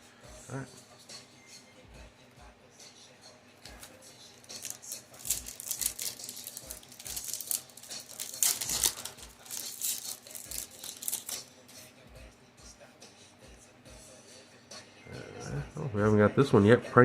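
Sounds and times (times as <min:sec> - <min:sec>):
cards rustling and flicking: 0:03.7 - 0:11.5
foil wrappers crinkling: 0:03.7 - 0:11.5.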